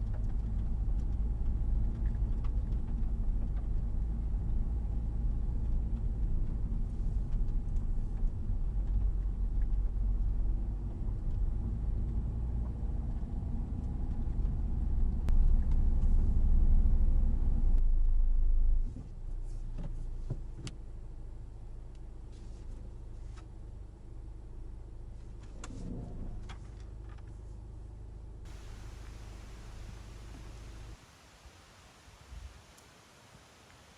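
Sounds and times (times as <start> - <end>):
car engine and road noise: 0.0 - 33.9
faint low hum: 0.0 - 33.9.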